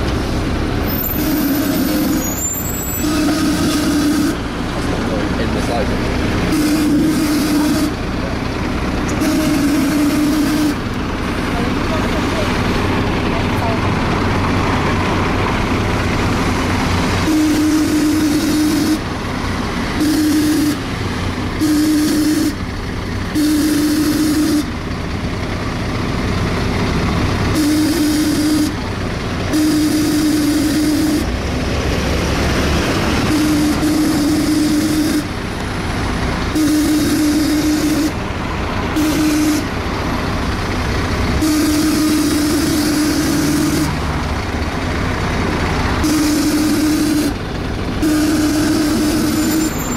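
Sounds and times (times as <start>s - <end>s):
bus engine and road noise: 0.0s - 49.9s
loud suction noise: 1.1s - 4.4s, 6.4s - 8.0s, 9.1s - 10.8s, 32.8s - 35.3s, 39.0s - 39.8s, 41.4s - 44.0s, 46.0s - 47.4s, 48.0s - 49.9s.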